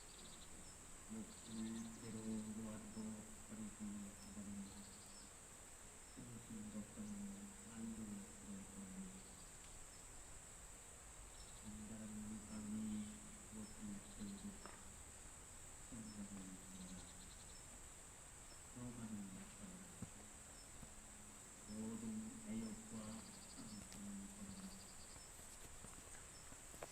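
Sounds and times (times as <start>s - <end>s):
insects chirring: 0.0s - 26.9s
person chanting a prayer: 1.1s - 5.0s, 6.2s - 9.4s, 11.6s - 14.9s, 15.9s - 17.2s, 18.8s - 24.9s.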